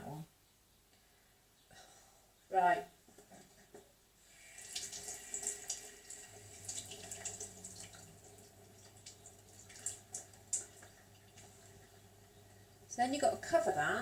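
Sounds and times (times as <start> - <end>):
low steady hum: 4.3 - 14.0
water splashing and trickling: 4.4 - 12.1.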